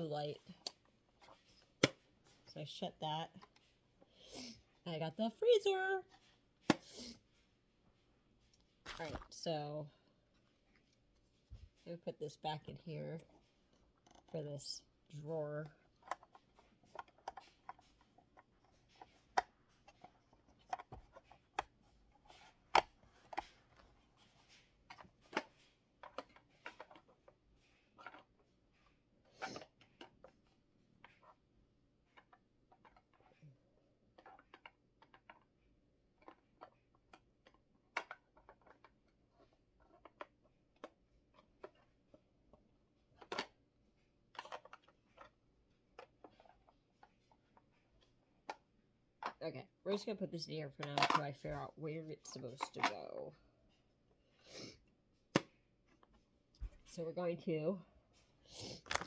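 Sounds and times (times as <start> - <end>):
plastic parts clicking: 34.1 - 35.5, 36.2 - 42.0, 58.8 - 59.0.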